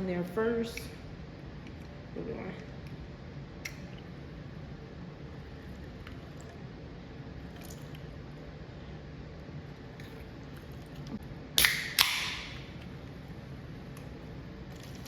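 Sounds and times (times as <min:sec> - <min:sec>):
bottle cap pops: 0:11.6 - 0:12.6.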